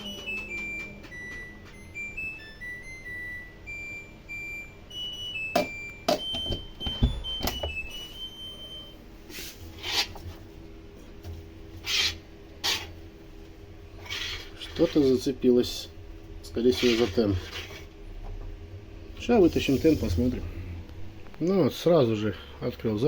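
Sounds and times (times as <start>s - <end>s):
simple beeping tune: 0.0s - 9.0s
washing machine drum knocking: 5.5s - 7.9s.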